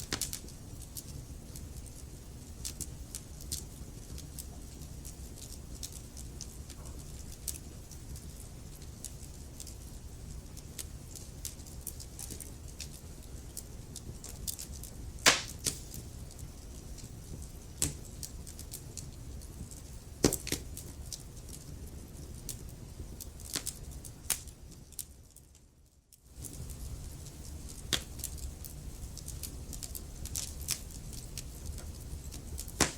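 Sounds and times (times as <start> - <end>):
fire pops: 0.0 - 2.0, 10.4 - 21.6, 22.3 - 25.1, 26.4 - 32.9
burning logs crackling: 0.0 - 32.9
low fire rumble: 0.0 - 32.9.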